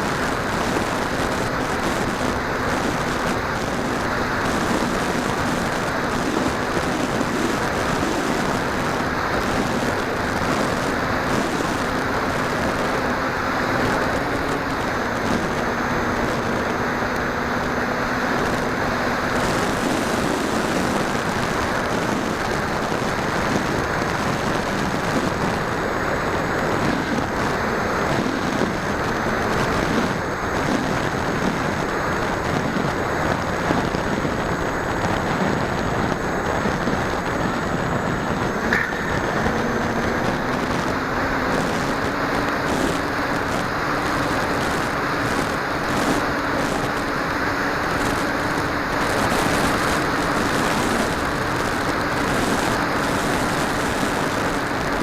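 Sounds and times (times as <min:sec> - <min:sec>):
rush of airflow: 0:00.0 - 0:55.0
thin high whine: 0:00.0 - 0:55.0.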